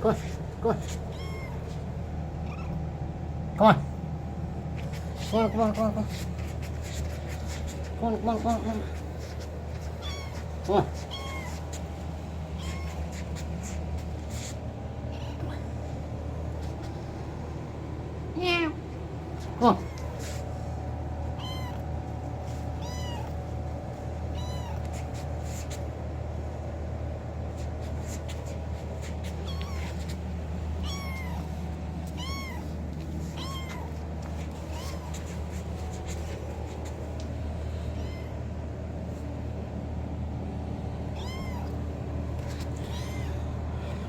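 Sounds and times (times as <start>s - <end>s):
steady low hum: 0.0s - 44.0s
kitten meowing: 0.8s - 2.8s, 8.8s - 13.9s, 15.0s - 15.6s, 19.8s - 20.2s, 21.4s - 21.9s, 22.8s - 23.4s, 24.3s - 25.0s, 29.3s - 30.2s, 30.8s - 36.1s, 37.8s - 38.4s, 41.1s - 41.8s, 42.4s - 44.0s.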